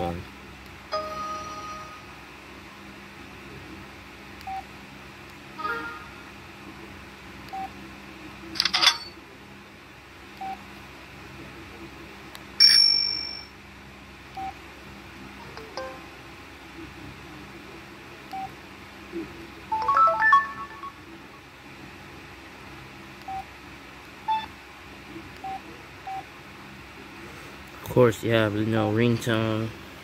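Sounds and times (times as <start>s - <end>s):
phone ringtone beeps: 19.8s - 21.0s.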